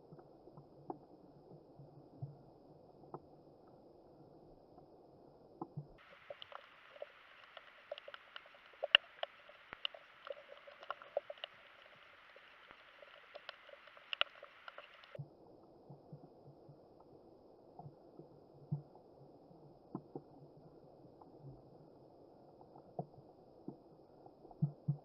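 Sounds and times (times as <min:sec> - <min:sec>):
sharp clicks and crackles: 0:05.6 - 0:15.2
faint underwater hiss: 0:06.0 - 0:25.0.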